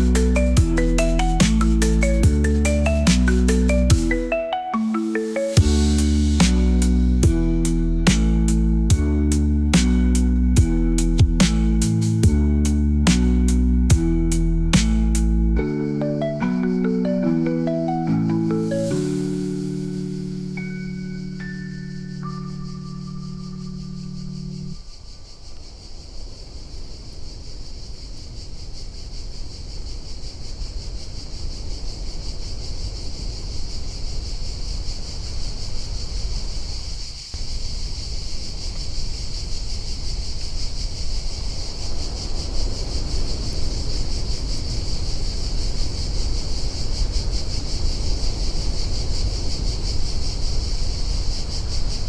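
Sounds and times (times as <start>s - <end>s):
steady high-pitched hiss: 0.0s - 52.0s
wind rumbling on microphone: 23.5s - 52.0s.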